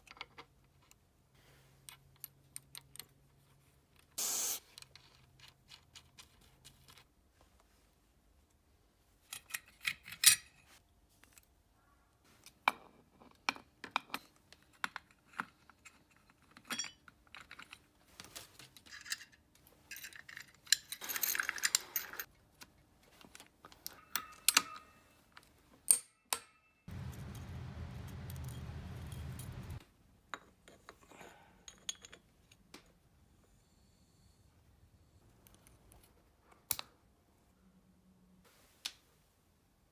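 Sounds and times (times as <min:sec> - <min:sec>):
metal tools clinking: 0:18.8 - 0:22.3, 0:23.8 - 0:25.2, 0:26.5 - 0:29.8
steady mechanical noise: 0:26.9 - 0:29.8.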